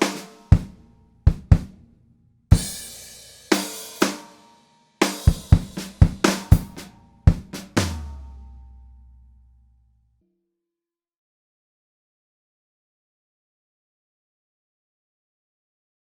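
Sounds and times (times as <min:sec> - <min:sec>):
crash cymbals: 0:00.0 - 0:01.0, 0:02.5 - 0:09.4.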